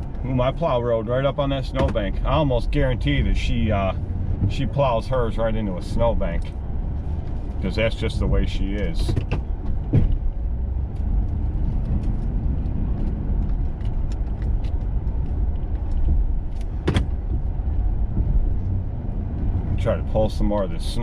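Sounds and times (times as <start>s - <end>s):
truck engine rumble: 0.0s - 21.0s.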